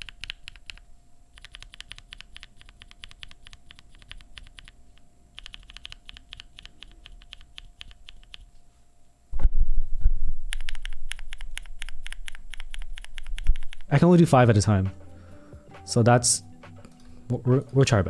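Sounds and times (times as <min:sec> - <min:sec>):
mechanical keyboard typing: 0:00.0 - 0:04.8, 0:05.4 - 0:08.5, 0:10.5 - 0:14.0.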